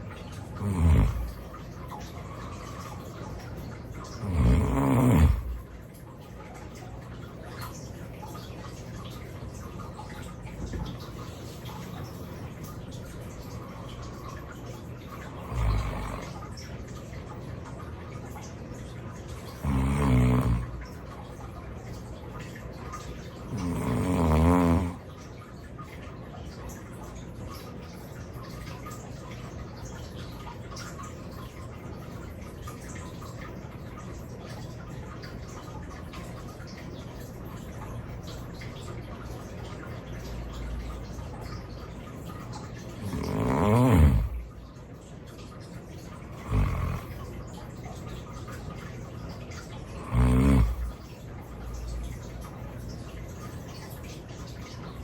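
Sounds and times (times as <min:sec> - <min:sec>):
low room noise: 0:00.0 - 0:55.0
man snoring heavily: 0:00.6 - 0:01.4, 0:04.2 - 0:05.6, 0:15.4 - 0:16.4, 0:19.5 - 0:20.8, 0:23.5 - 0:25.0, 0:43.0 - 0:44.4, 0:46.4 - 0:47.2, 0:50.0 - 0:50.9.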